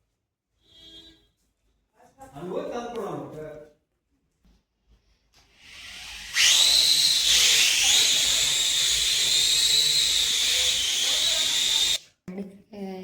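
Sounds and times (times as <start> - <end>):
drone propellers whining: 5.7 - 12.0.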